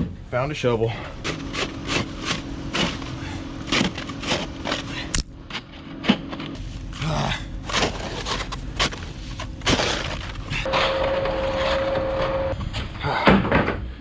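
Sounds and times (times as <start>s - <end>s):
snow shovel scraping snow: 9.6s - 12.5s
steady tone: 10.7s - 12.6s.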